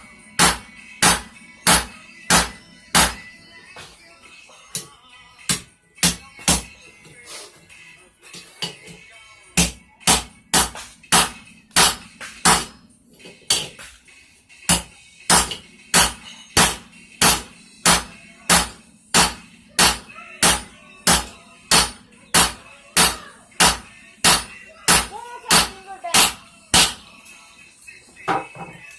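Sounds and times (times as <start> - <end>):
hammer striking metal on anvil: 0.4 - 3.3, 9.6 - 12.8, 14.7 - 27.1.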